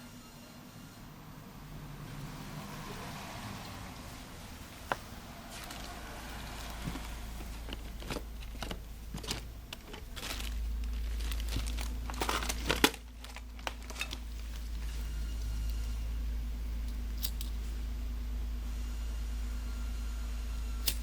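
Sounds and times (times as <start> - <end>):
thin sheet crinkling: 6.6 - 15.2.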